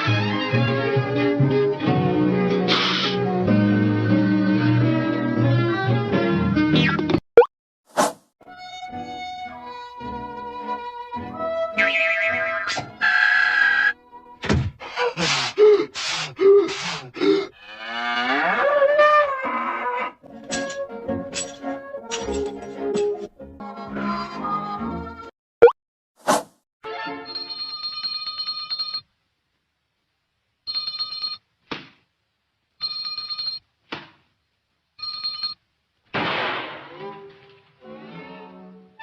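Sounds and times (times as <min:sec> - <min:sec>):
short hissing swish: 0:02.7 - 0:03.2, 0:07.9 - 0:08.3, 0:26.2 - 0:26.6
cow mooing: 0:17.5 - 0:20.2.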